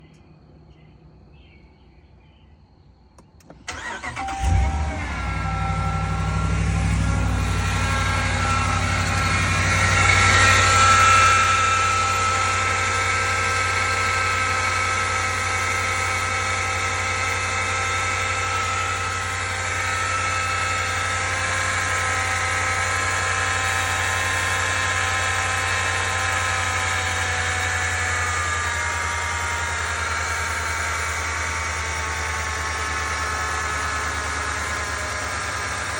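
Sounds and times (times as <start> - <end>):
engine starting and idling: 3.4 - 35.9
high-pitched whine: 3.9 - 22.0.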